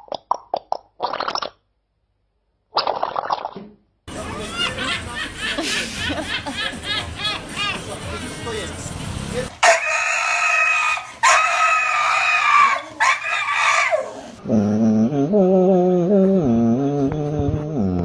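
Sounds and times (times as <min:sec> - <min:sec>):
high drawn-out animal calls: 0:09.6 - 0:14.4.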